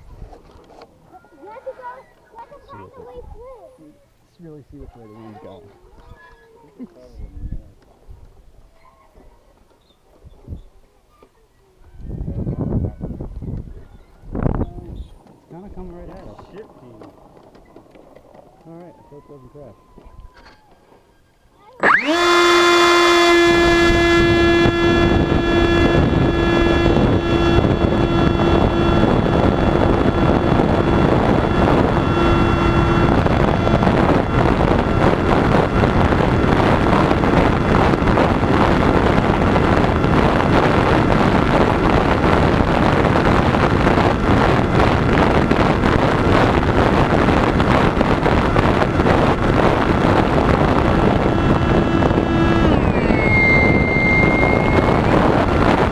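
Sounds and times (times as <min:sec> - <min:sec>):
wind noise on microphone: 0:00.0 - 0:03.7, 0:04.7 - 0:09.4, 0:10.1 - 0:10.8, 0:11.8 - 0:55.9
electric motor and propeller whine: 0:15.2 - 0:55.9.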